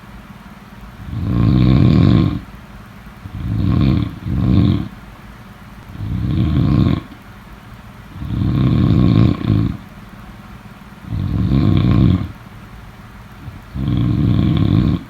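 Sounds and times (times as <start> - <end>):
rattling snores: 1.0 - 2.5, 3.2 - 5.0, 5.8 - 7.2, 8.1 - 10.0, 11.0 - 12.5, 13.3 - 15.0.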